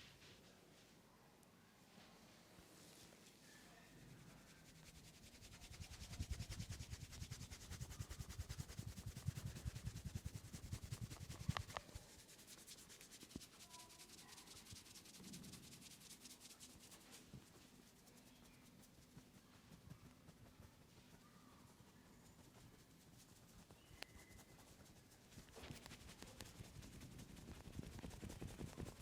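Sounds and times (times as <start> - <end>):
rubbing on hair and scalp: 2.8 - 29.0.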